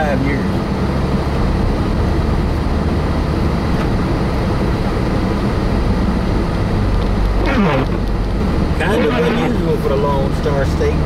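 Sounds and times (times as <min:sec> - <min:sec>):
car road and engine rumble: 0:00.0 - 0:11.0.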